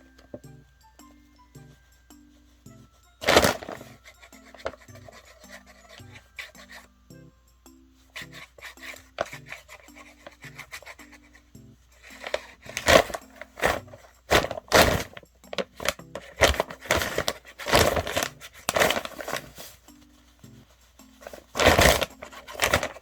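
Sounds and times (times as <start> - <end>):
light background music: 0.0 - 23.0
paper bag rustling and scraping: 3.2 - 6.9, 8.2 - 11.0, 12.0 - 23.0.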